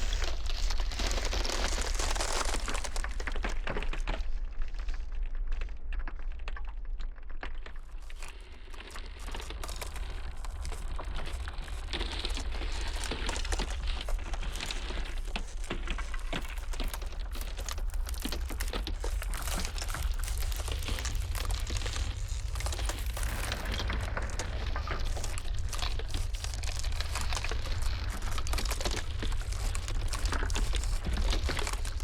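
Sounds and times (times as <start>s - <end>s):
ice crackling and snapping: 0.0s - 32.0s
blizzard wind rumble: 9.0s - 32.0s.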